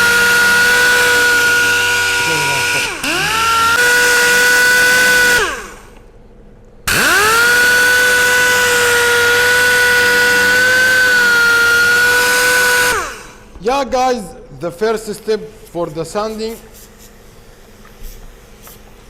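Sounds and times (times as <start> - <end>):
sanding machine motor whine: 0.0 - 5.9, 6.9 - 13.4.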